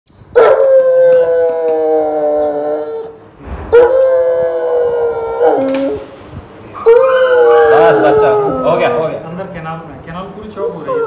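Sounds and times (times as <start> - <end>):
dog howling: 0.4 - 6.1, 6.8 - 9.2, 10.6 - 11.0.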